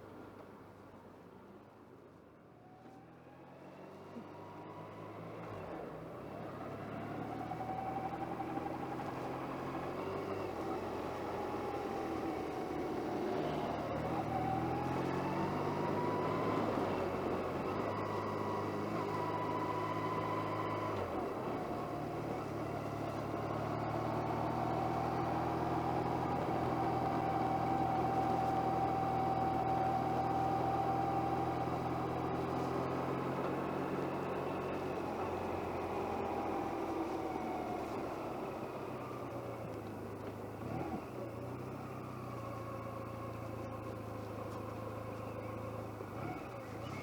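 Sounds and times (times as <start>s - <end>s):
road and wind noise: 0.0s - 47.0s
motorcycle engine running: 16.3s - 47.0s.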